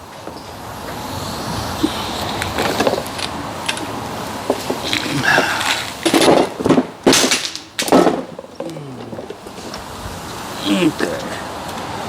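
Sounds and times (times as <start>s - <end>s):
metal parts clanking: 4.7s - 9.7s.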